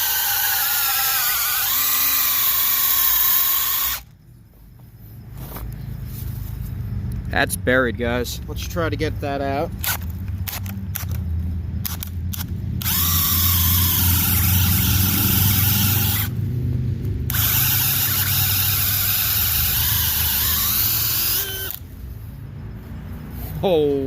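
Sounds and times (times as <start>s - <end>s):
drill clicks: 0.0s - 4.1s, 11.8s - 16.3s, 17.3s - 21.8s
power drill motor whine: 0.0s - 4.1s, 12.8s - 16.3s, 17.3s - 21.8s.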